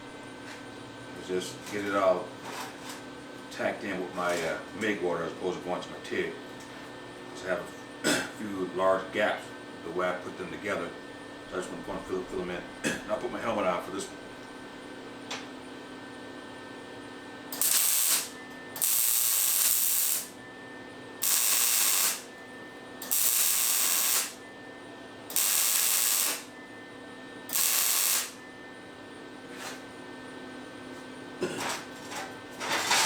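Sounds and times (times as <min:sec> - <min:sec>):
welding arc crackling and hissing: 0:17.5 - 0:20.4, 0:21.2 - 0:22.3, 0:23.0 - 0:24.4, 0:25.3 - 0:26.5, 0:27.5 - 0:28.4.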